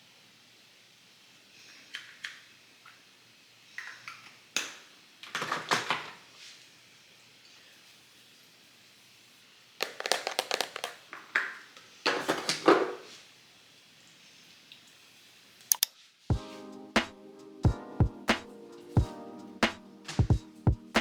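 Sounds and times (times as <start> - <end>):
paper or plastic crinkling: 9.8 - 11.4.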